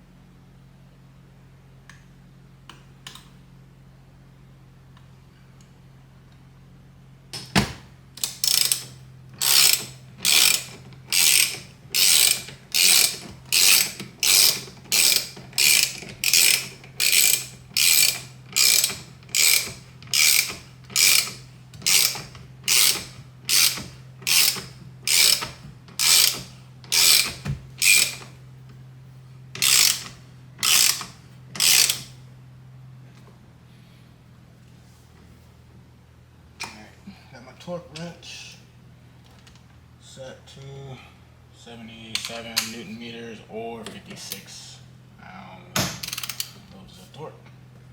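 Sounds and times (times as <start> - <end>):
ratchet wrench clicking: 8.2 - 28.4, 29.6 - 32.2, 46.0 - 46.6.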